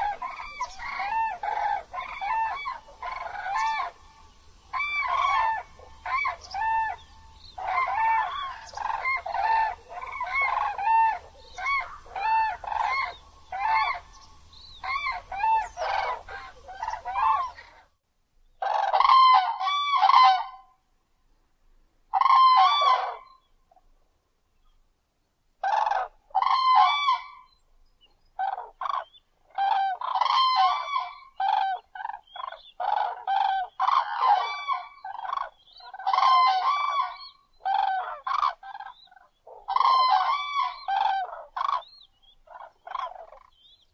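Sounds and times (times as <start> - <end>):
cranes honking calls: 0.0 - 17.8, 25.6 - 27.4, 28.4 - 43.6.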